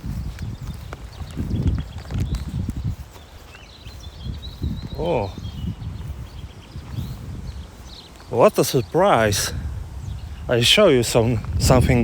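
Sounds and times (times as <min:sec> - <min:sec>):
walking footsteps thumps: 0:00.0 - 0:08.6
wind buffeting microphone: 0:00.0 - 0:12.0.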